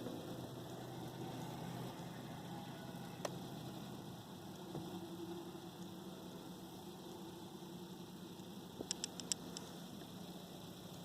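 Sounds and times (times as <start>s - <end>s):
small click: 8.8s - 9.7s.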